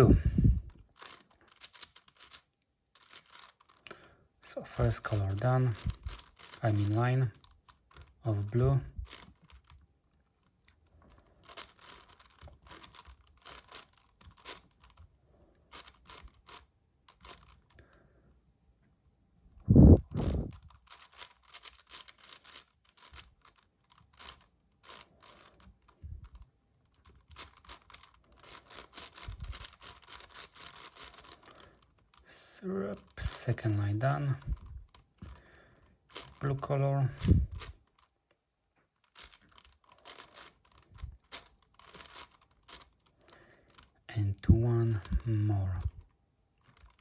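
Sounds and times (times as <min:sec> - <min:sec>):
puzzle cube clicking layer turns: 0:00.8 - 0:03.9, 0:04.7 - 0:09.8, 0:10.4 - 0:15.0, 0:15.7 - 0:17.8, 0:20.0 - 0:32.3, 0:39.0 - 0:44.0.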